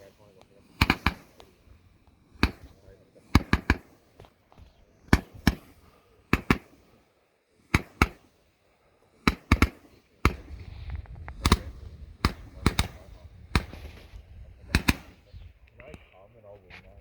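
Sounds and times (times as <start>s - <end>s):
firework popping: 0.0s - 7.0s, 7.6s - 17.0s
low rumble: 10.4s - 17.0s.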